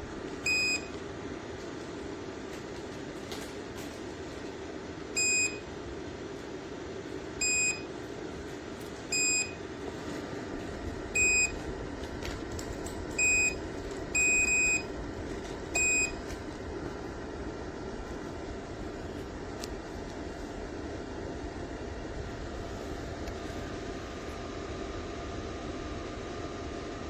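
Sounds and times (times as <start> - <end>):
heater fan whirring: 0.0 - 27.0
heater control panel beeps: 0.3 - 1.0, 5.1 - 5.8, 7.2 - 8.1, 8.9 - 9.8, 11.1 - 12.0, 13.0 - 16.7.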